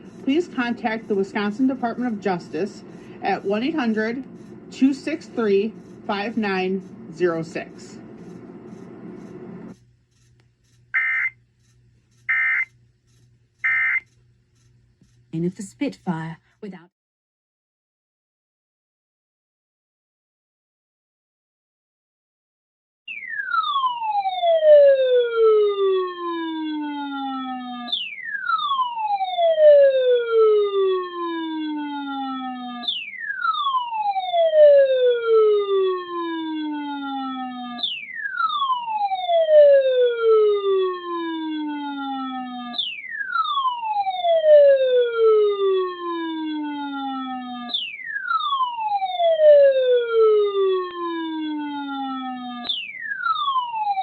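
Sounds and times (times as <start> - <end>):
siren-like electronic tone sweeping down: 23.1 - 54.0.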